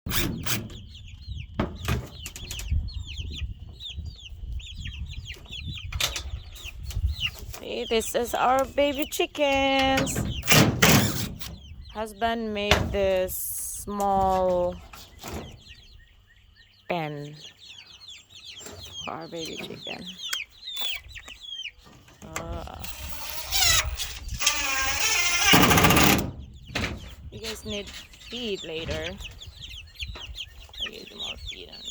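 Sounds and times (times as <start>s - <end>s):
loud rasping sound: 0.0s - 0.8s, 10.3s - 11.5s, 20.8s - 21.0s, 22.7s - 26.3s
baby chicks peeping: 0.1s - 31.9s.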